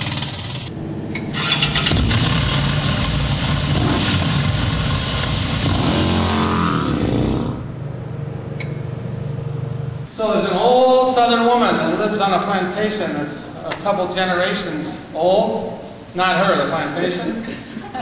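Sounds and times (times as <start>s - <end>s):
motorcycle engine revving: 0.0s - 7.8s.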